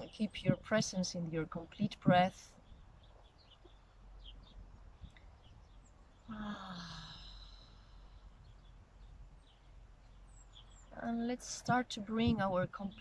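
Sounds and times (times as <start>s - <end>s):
person sighing exhale: 6.3s - 7.8s.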